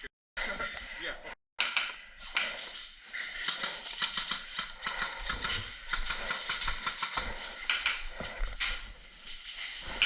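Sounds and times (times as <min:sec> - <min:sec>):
sharp clicks and clatter: 0:01.6 - 0:08.9.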